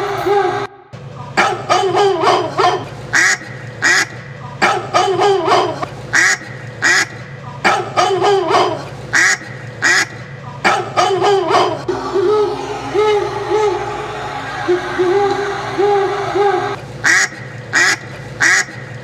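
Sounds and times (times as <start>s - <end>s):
looped duck-like quacking calls: 1.4s - 11.9s, 17.0s - 19.0s
steady low drone: 9.5s - 19.0s.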